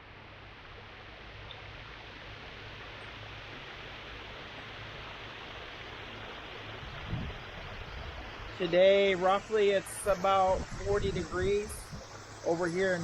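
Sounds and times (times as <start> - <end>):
waterfall rushing: 3.3 - 13.0.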